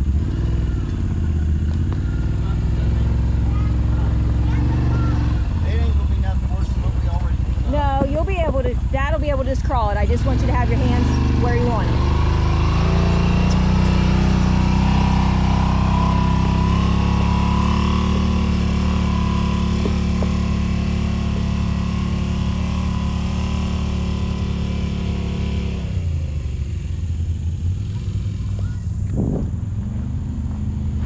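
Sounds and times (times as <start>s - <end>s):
utility vehicle engine running: 0.0s - 31.0s.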